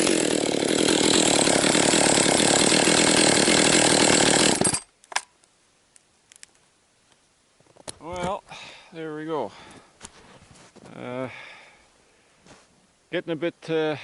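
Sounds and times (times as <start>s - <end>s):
chainsaw running at high revs: 0.0s - 4.8s.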